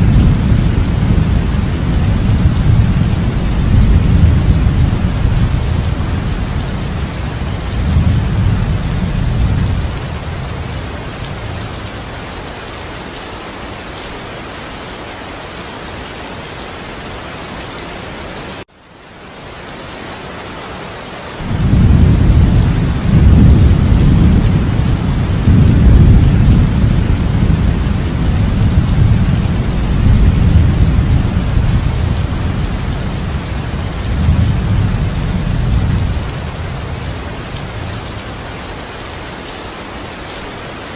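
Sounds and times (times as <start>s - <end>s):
rolling thunder: 0.0s - 12.0s, 21.4s - 38.5s
heavy rain falling: 0.0s - 40.9s.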